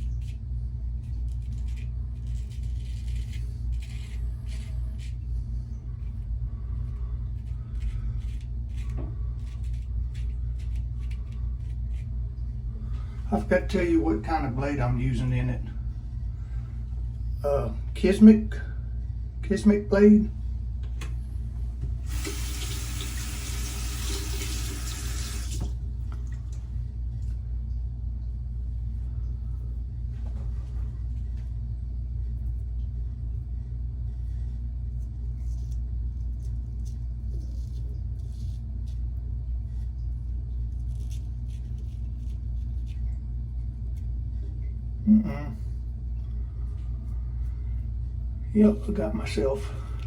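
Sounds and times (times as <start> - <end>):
steady low rumble: 0.0 - 22.5, 25.7 - 50.0
tap water running into sink: 22.0 - 25.8.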